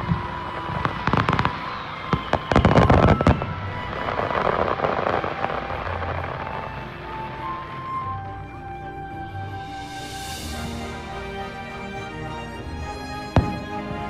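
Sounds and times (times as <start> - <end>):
fireworks bursting: 0.0 - 7.0.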